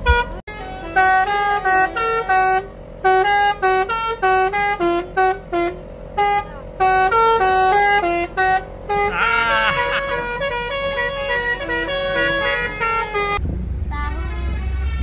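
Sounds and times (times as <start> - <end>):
horn playing quick tune: 4.2 - 13.4.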